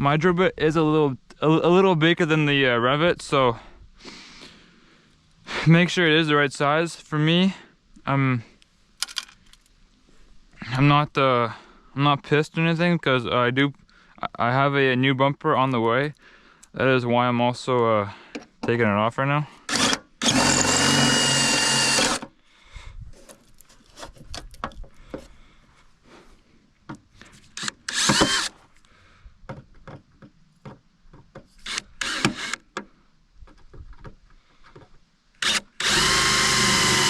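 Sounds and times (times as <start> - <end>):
power drill drilling rivets: 19.6 - 22.4, 27.3 - 28.6, 31.6 - 32.8, 35.4 - 37.0.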